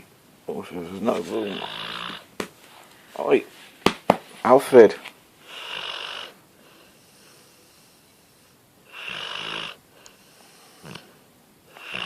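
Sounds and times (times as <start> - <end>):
dog snoring: 0.9 - 2.3, 5.4 - 12.0
soft breathing: 6.5 - 12.0.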